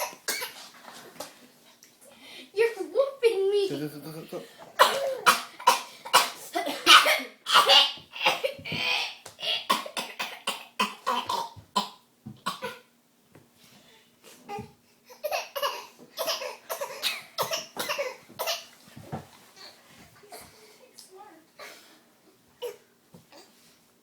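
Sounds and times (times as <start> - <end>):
child fake coughing: 0.0 - 0.6, 4.8 - 12.9, 15.2 - 18.7.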